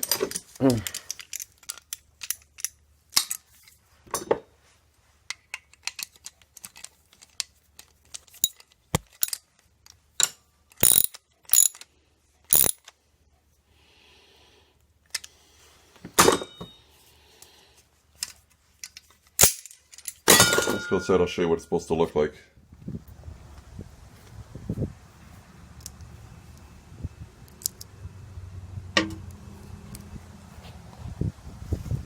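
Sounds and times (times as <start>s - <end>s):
metal nuts clicking and clinking: 0.0s - 4.4s, 5.3s - 11.9s, 12.5s - 12.9s, 18.2s - 21.2s
metal knocks: 29.0s - 29.3s.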